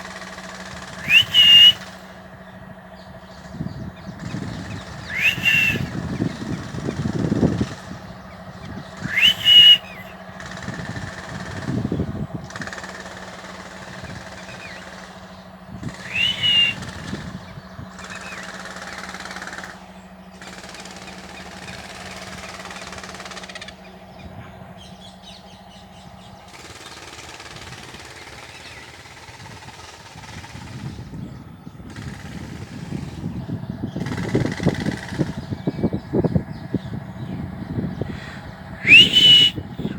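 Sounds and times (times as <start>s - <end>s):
parakeet calls: 1.0s - 1.8s, 4.7s - 5.9s, 9.1s - 10.1s, 16.0s - 16.8s.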